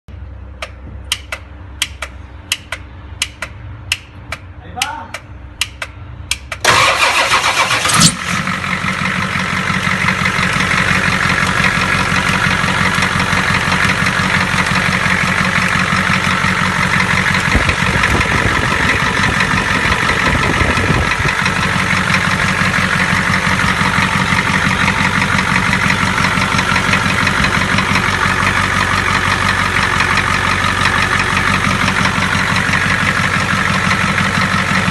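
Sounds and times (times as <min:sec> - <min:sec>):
diesel engine cranking and idling: 0:00.1 - 0:34.9.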